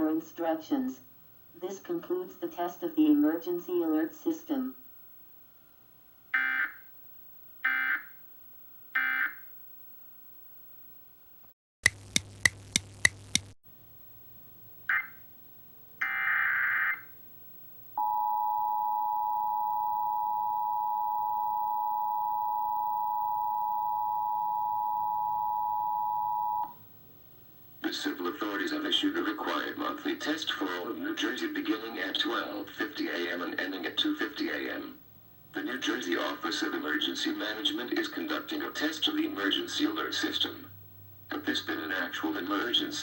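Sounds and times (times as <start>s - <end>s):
crackling static with clicks: 11.8s - 13.6s
two-tone attention signal: 18.0s - 26.7s.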